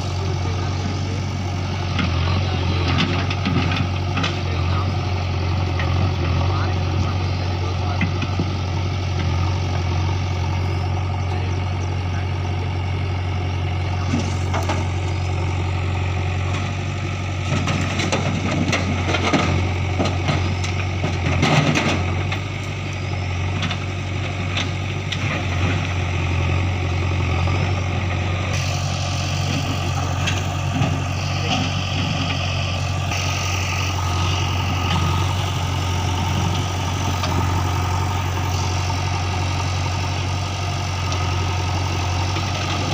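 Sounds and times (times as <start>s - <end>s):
diesel engine idling: 0.0s - 42.9s
clatter and knocks: 17.4s - 22.4s.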